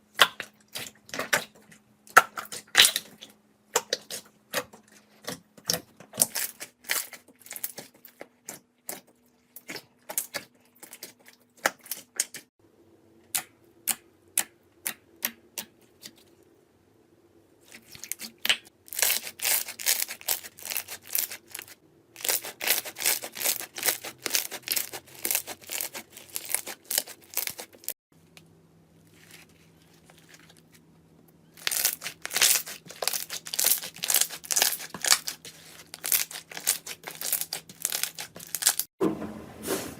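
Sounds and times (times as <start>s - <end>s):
slime crackling and popping: 31.6s - 38.9s.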